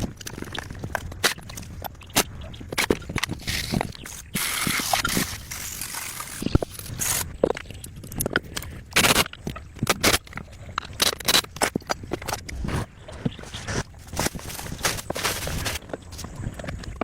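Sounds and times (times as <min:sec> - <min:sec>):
irregular scraping: 0:12.2 - 0:16.8.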